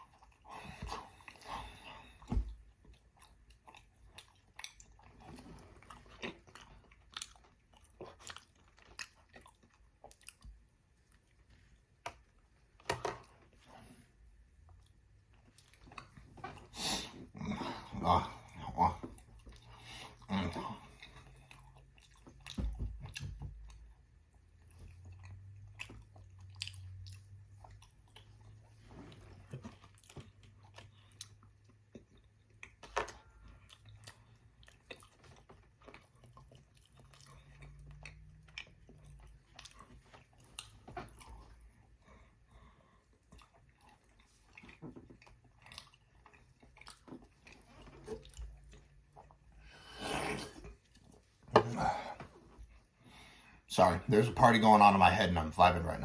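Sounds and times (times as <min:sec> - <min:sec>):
wet chewing sounds: 0:00.0 - 0:53.7
small mouth clicks and smacks: 0:02.2 - 0:05.2.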